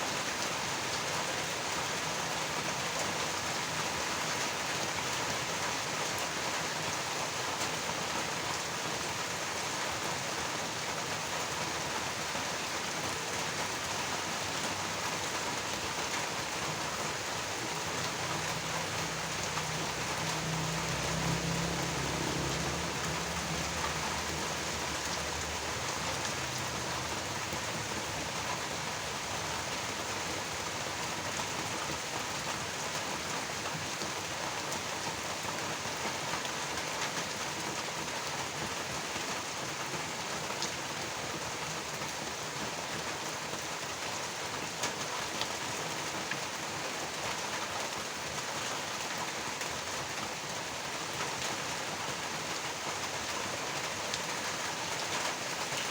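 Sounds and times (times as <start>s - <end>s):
steady rain pattering: 0.0s - 55.9s.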